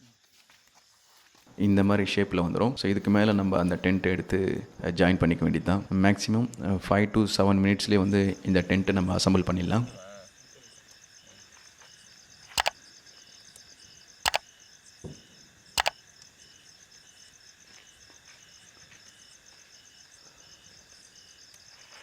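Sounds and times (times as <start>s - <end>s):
insects chirping: 7.8s - 22.0s.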